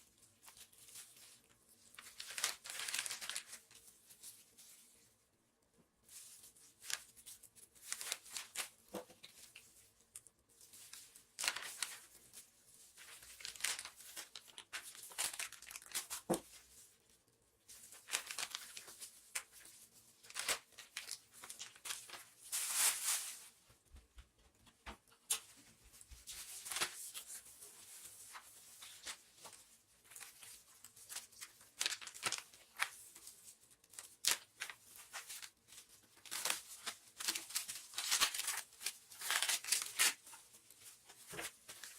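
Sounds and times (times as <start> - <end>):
plastic packaging crinkling: 0.2 - 5.0, 6.1 - 17.0, 17.7 - 23.6, 25.3 - 41.9.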